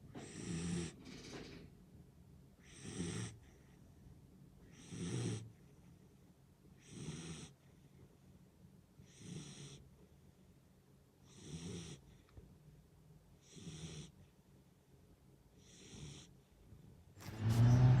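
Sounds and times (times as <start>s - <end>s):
dog snoring faintly: 0.1s - 1.6s, 2.6s - 3.7s, 4.6s - 5.7s, 6.7s - 7.7s, 9.0s - 9.9s, 11.2s - 12.3s, 13.4s - 14.3s, 15.6s - 16.4s.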